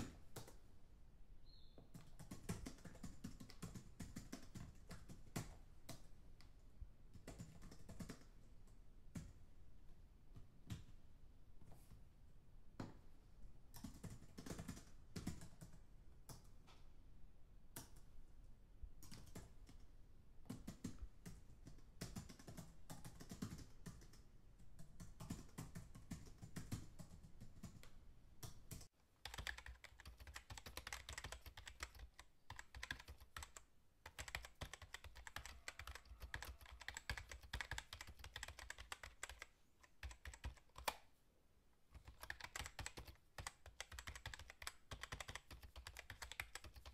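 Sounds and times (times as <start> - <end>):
typing on computer keyboard: 1.9 - 6.1, 7.1 - 8.4, 13.7 - 16.6, 19.0 - 41.1, 41.9 - 46.9.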